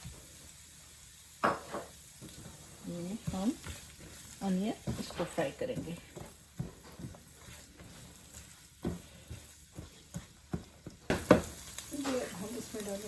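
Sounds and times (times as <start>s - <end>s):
onion sizzling in a frying pan: 0.0s - 13.0s
utensil scraping and knocking pan: 3.2s - 12.2s.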